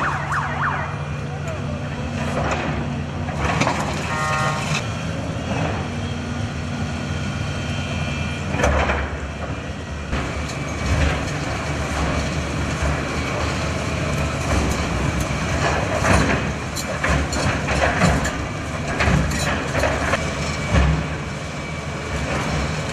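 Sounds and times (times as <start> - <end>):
excavator diesel engine running: 0.0 - 22.9.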